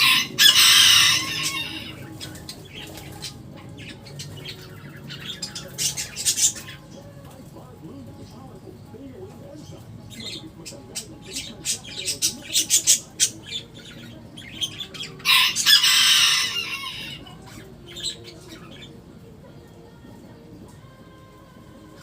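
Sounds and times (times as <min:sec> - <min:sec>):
harsh bird squawk: 0:00.0 - 0:06.9, 0:14.6 - 0:18.3
high-pitched bird calls: 0:00.0 - 0:07.1, 0:10.0 - 0:19.0.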